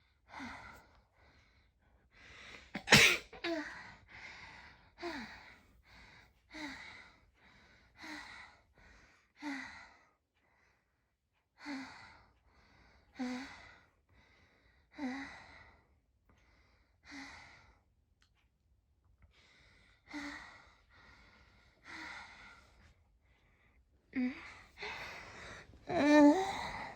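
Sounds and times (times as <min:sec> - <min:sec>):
person sneezing: 0:02.8 - 0:03.5
person moaning breathily: 0:25.9 - 0:26.9.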